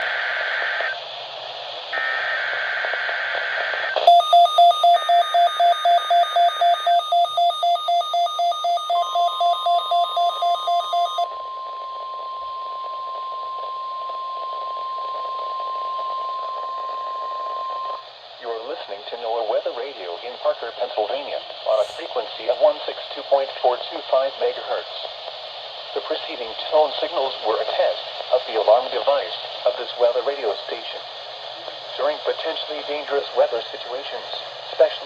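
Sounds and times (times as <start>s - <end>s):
steady warning alarm tone: 4.0s - 18.0s.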